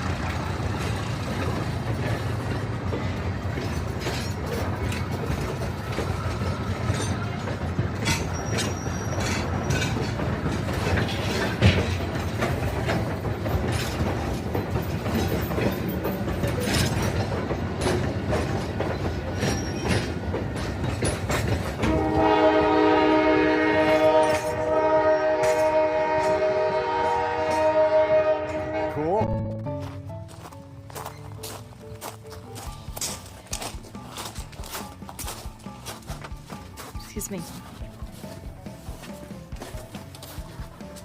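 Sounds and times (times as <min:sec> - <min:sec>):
steam locomotive rumble: 0:00.0 - 0:41.0
clanks and clicks: 0:00.2 - 0:22.0
steam whistle blowing: 0:21.8 - 0:29.2.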